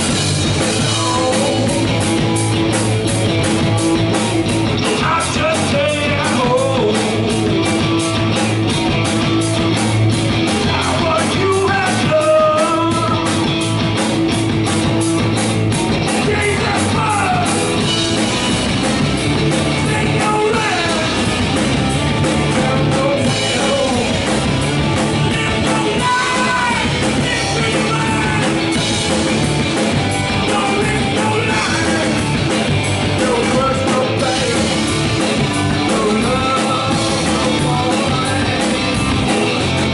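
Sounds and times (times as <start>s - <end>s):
rock band playing: 0.0s - 39.9s
person singing: 0.8s - 2.0s, 4.8s - 7.5s, 10.6s - 13.4s, 16.1s - 17.7s, 19.7s - 21.3s, 22.4s - 24.3s, 25.2s - 28.6s, 30.4s - 32.4s, 33.1s - 39.6s.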